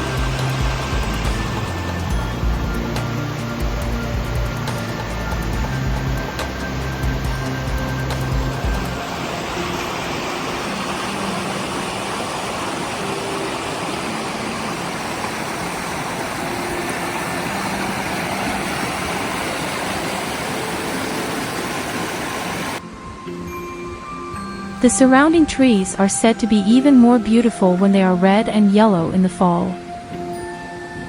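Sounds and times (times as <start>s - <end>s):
waterfall rushing: 0.0s - 26.4s.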